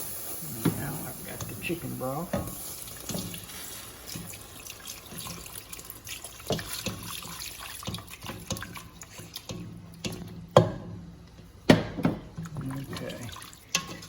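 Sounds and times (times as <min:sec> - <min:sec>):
liquid splashing in a pan: 0:00.0 - 0:14.0
utensil knocking against pan: 0:09.4 - 0:11.0.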